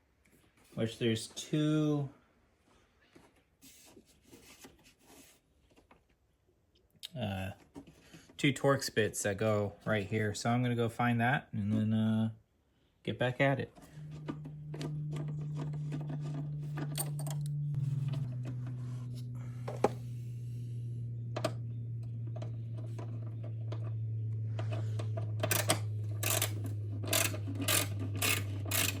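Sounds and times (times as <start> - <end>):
steady low hum: 13.7 - 29.0.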